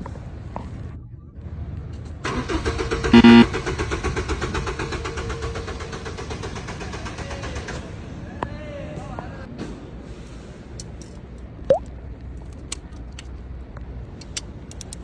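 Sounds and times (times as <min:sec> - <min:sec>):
car engine cranking and running: 0:02.2 - 0:08.1
loud pitched blast: 0:03.2 - 0:03.5.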